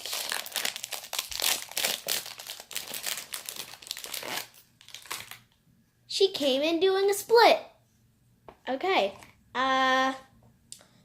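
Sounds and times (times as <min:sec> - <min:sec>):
plastic wrapper crinkling and tearing: 0:00.0 - 0:05.6.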